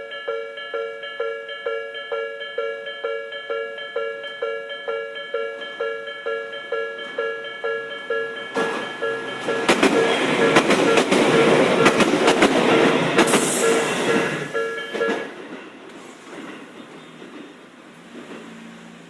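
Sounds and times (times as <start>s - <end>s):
level crossing warning bell ringing: 0.0s - 15.8s
electric train passing: 0.0s - 19.0s
train wheels clicking over rail joints: 7.0s - 19.0s.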